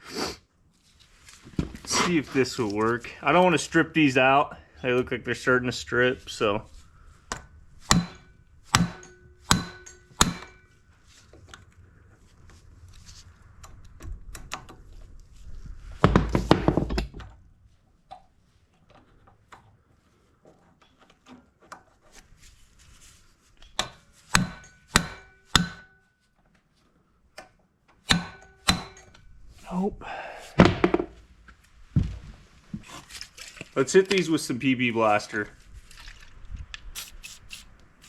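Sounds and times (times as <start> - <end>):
hammer blows on metal: 7.9 - 10.6, 24.3 - 26.0.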